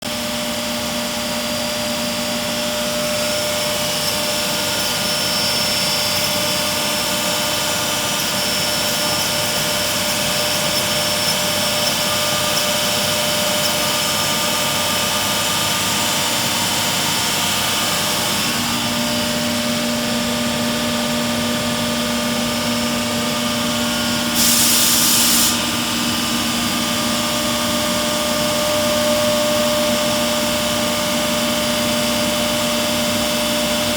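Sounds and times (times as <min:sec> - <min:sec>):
machine humming and whining: 0:00.1 - 0:33.9
air burst hiss: 0:24.2 - 0:25.9.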